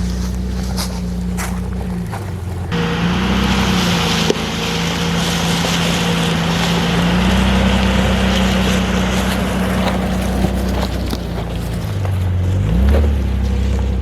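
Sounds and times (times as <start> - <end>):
car engine running: 0.0 - 14.0
tyre and road noise: 0.0 - 14.0.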